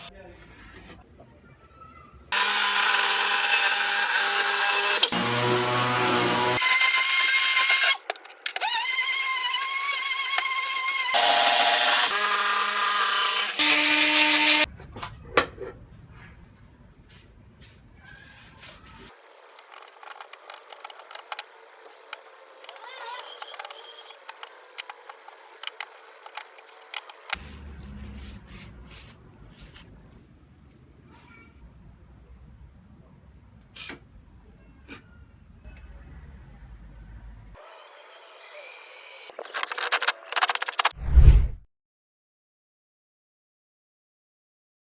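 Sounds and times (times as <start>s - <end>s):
electric power tools whining: 2.4s - 14.7s.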